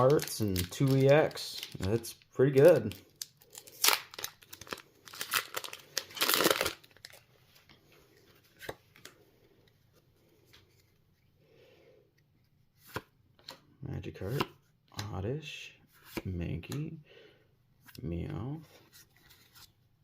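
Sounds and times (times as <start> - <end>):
cards being handled: 0.0 - 11.4, 12.2 - 15.2, 17.8 - 19.8
foil wrapper tearing: 3.2 - 7.2.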